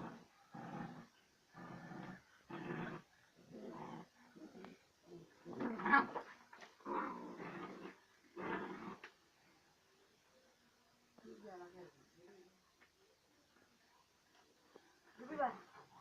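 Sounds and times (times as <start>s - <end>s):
dog growling: 0.0s - 9.1s.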